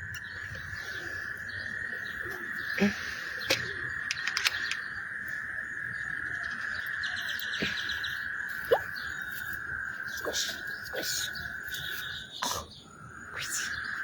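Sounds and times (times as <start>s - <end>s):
chorus of frogs calling: 0.0s - 14.0s
sharp clicks: 3.5s - 4.8s.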